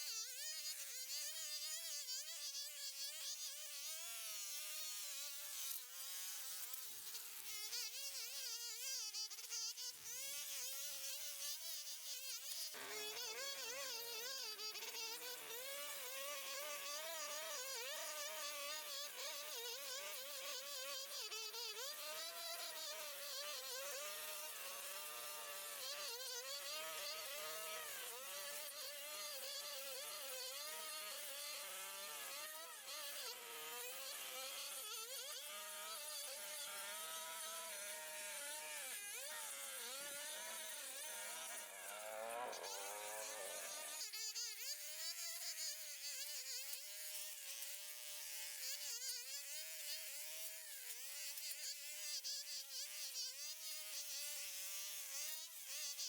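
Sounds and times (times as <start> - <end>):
brush cutter engine whining: 41.2 - 43.9.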